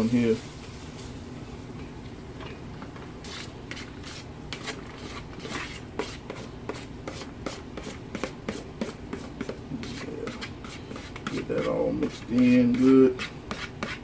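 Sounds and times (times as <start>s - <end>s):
utensil scraping and knocking pot: 2.9s - 14.0s.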